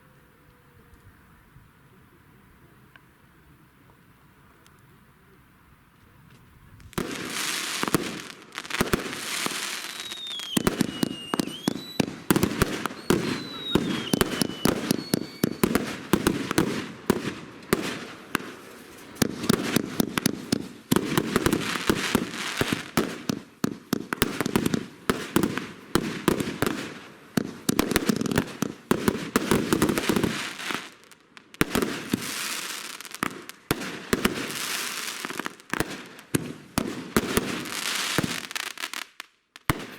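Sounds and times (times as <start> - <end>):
firework cracks and crackling pops: 6.3 - 39.9
faint firework whistles: 8.8 - 22.9.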